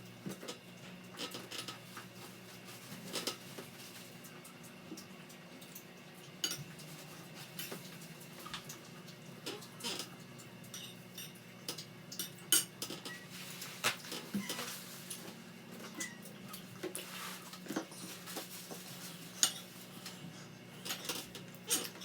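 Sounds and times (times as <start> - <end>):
utensils clinking against dishes: 6.4 - 8.8, 9.5 - 20.2, 20.8 - 22.0.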